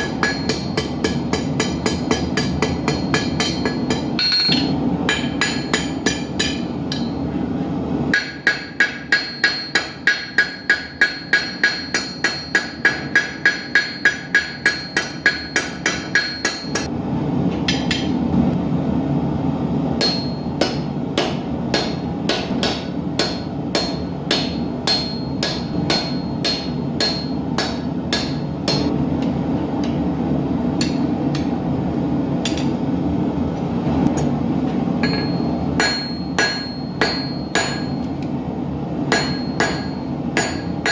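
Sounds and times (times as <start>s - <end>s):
hammer striking steel on anvil: 0.0s - 7.3s, 8.1s - 16.9s, 17.6s - 18.2s, 20.0s - 29.0s, 30.8s - 31.6s, 35.0s - 38.3s, 39.1s - 40.9s
gas forge roaring: 0.0s - 40.9s.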